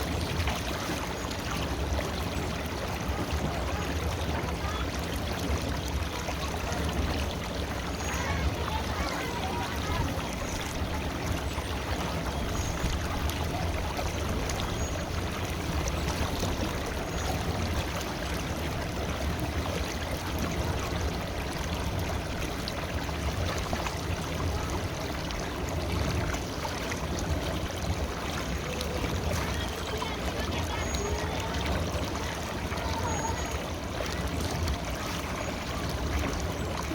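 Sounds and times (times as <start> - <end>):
river water flowing: 0.0 - 36.9.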